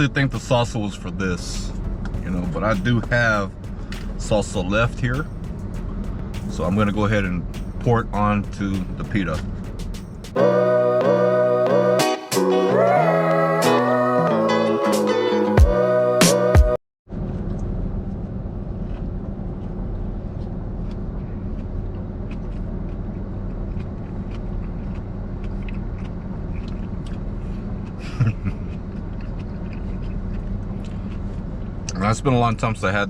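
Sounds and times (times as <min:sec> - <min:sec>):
car engine idling: 0:00.0 - 0:10.4, 0:17.1 - 0:33.0
slide guitar music sting: 0:10.4 - 0:16.7.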